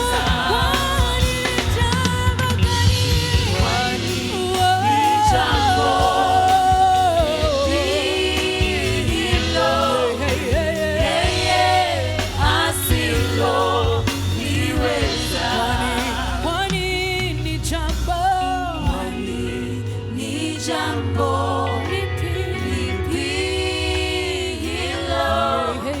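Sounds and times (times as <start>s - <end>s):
band with drums: 0.0s - 19.2s
worship team singing: 0.0s - 26.0s.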